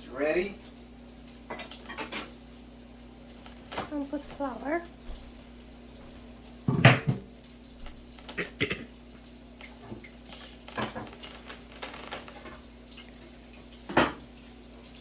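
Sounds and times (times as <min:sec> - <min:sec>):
dishes and utensils clattering: 0:01.5 - 0:02.4, 0:06.7 - 0:07.3, 0:09.8 - 0:12.6.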